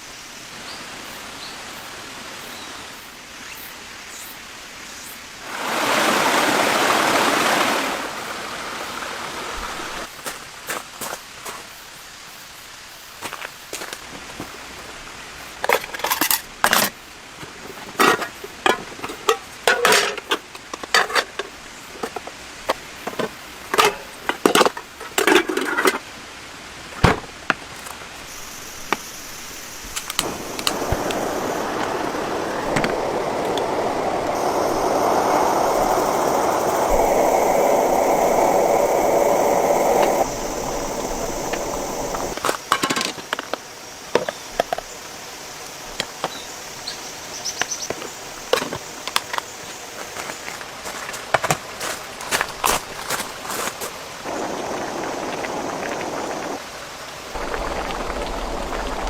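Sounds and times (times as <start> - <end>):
steady rushing noise: 28.3 - 42.4, 57.3 - 59.0.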